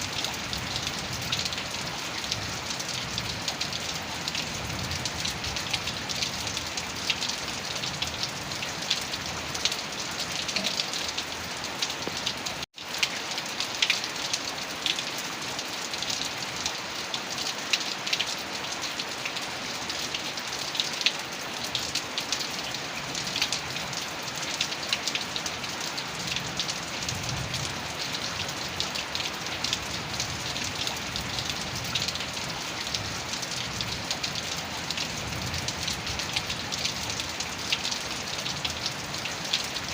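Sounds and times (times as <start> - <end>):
heavy rain: 0.0 - 39.9
raindrop hits: 10.2 - 12.7.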